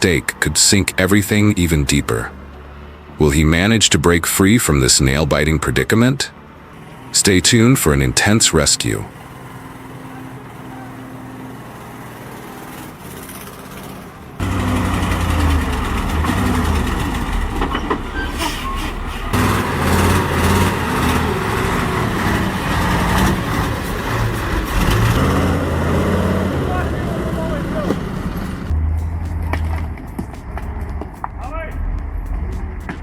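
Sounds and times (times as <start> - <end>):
truck engine running under load: 6.4 - 31.2
engine clattering and knocks: 9.1 - 33.0.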